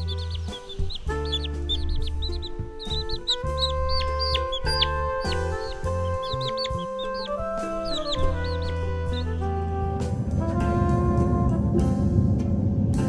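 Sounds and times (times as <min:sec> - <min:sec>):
chicks peeping: 0:00.0 - 0:09.4
background music: 0:00.0 - 0:13.0.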